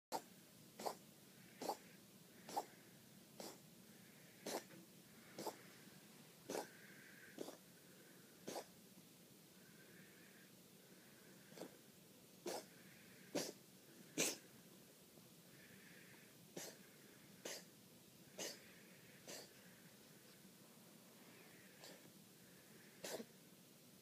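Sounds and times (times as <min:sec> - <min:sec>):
cat coughing: 0:00.1 - 0:01.0, 0:01.6 - 0:01.8, 0:02.5 - 0:02.7, 0:03.4 - 0:03.6, 0:04.4 - 0:04.8, 0:05.4 - 0:05.6, 0:06.5 - 0:06.7, 0:07.4 - 0:07.6, 0:08.4 - 0:08.7, 0:12.4 - 0:12.7, 0:13.4 - 0:13.6, 0:14.2 - 0:14.4, 0:16.6 - 0:16.8, 0:17.4 - 0:17.7, 0:18.4 - 0:18.6, 0:19.3 - 0:19.5, 0:21.8 - 0:22.0, 0:23.0 - 0:23.3.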